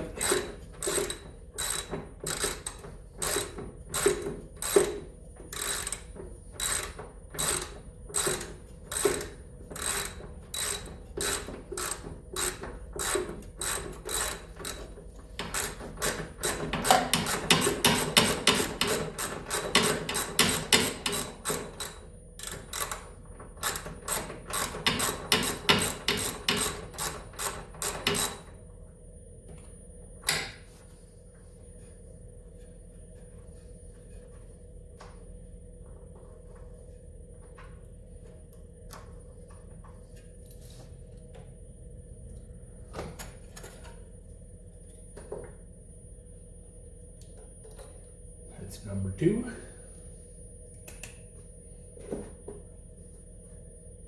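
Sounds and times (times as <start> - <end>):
socket ratchet clicking: 0.2 - 4.9.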